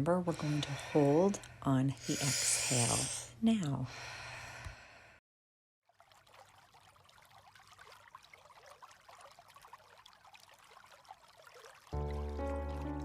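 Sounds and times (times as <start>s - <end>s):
faint trickling water: 5.8s - 13.0s.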